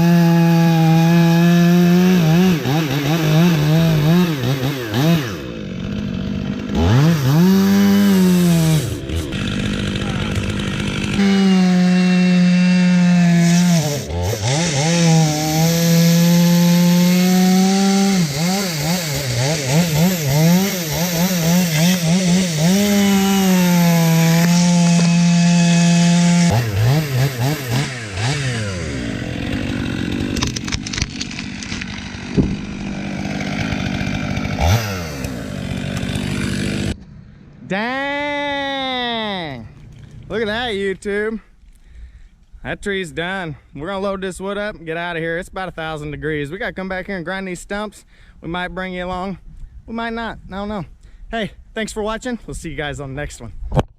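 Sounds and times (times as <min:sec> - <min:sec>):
chainsaw cutting wood: 0:00.0 - 0:37.2.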